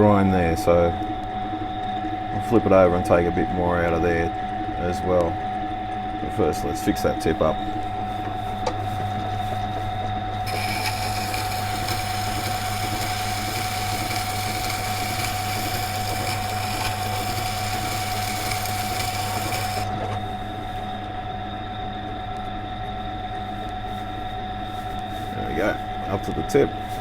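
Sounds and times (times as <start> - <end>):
grinder motor hum: 8.7 - 21.2
knife grinding on wet stone: 10.5 - 20.1.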